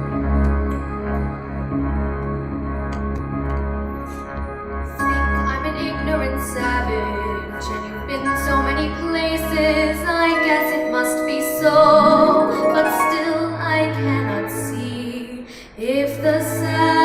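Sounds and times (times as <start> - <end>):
instrumental accompaniment: 0.0 - 15.1
girl singing a slow song: 5.0 - 17.0.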